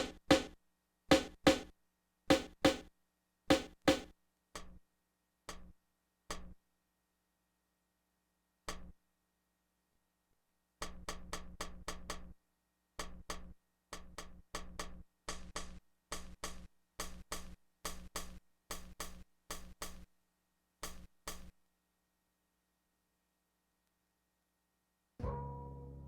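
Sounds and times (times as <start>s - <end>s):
sampled snare drum hits: 0.0s - 1.7s, 2.3s - 2.9s, 3.5s - 4.7s, 14.6s - 20.0s.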